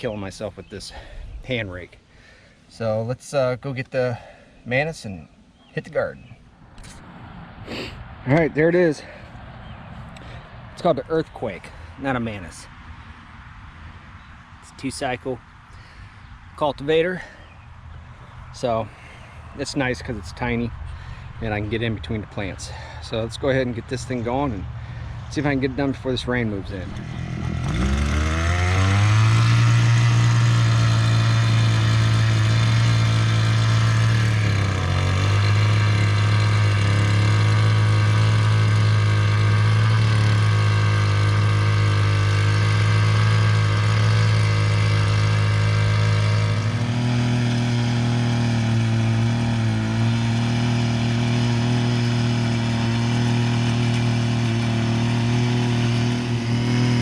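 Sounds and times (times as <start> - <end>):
small two-stroke engine revving: 26.4 - 57.0.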